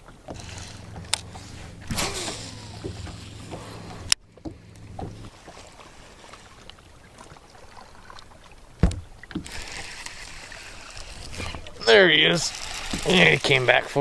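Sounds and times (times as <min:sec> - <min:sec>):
steady low hum: 0:00.4 - 0:05.4
low thump: 0:08.8 - 0:09.1.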